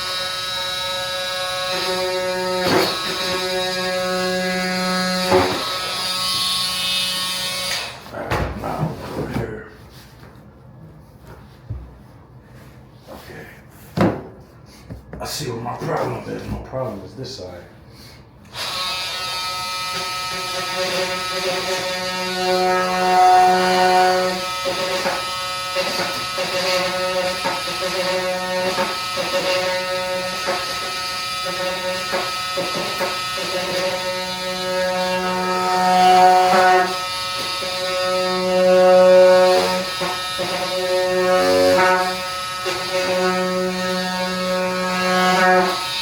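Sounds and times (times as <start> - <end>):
power tool motor buzzing: 0.0 - 8.0, 18.5 - 46.0
knocks and scrapes: 5.0 - 6.5.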